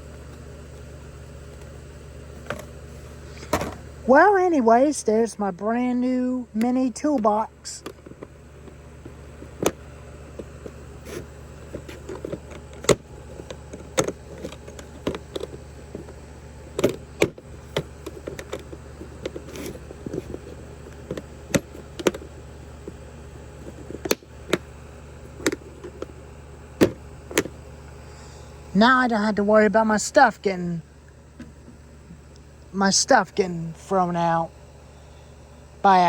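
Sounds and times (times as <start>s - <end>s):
low hum: 0.0s - 36.0s
tools rattling: 7.8s - 23.0s.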